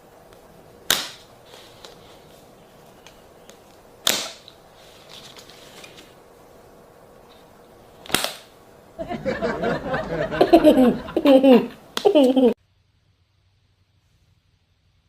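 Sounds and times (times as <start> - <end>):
faint steady hiss: 0.0 - 15.0
sharp snaps: 0.3 - 2.0, 2.9 - 4.6, 8.0 - 8.6, 11.9 - 12.4.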